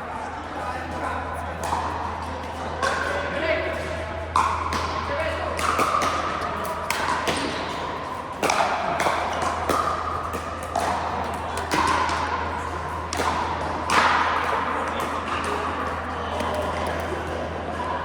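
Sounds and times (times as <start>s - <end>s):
paddles hitting plastic ball: 8.4s - 12.3s.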